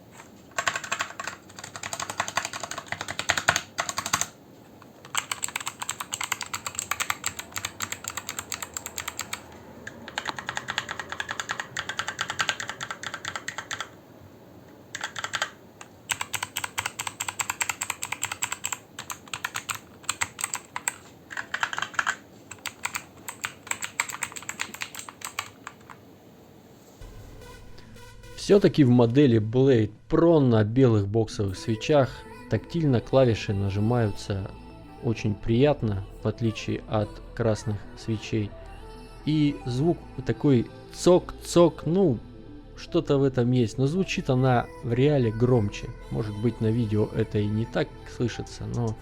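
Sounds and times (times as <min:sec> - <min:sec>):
typing on mechanical keyboard: 0:00.2 - 0:14.0, 0:14.9 - 0:26.0.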